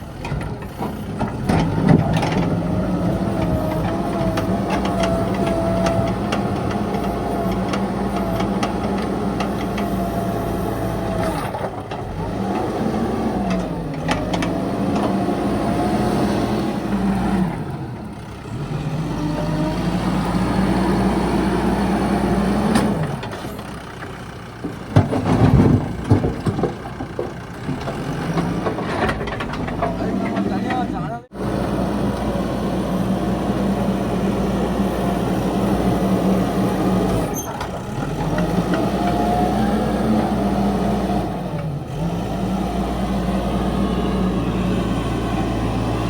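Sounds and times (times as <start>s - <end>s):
diesel engine running: 0.0s - 46.0s
loud irregular knocks: 24.5s - 30.0s.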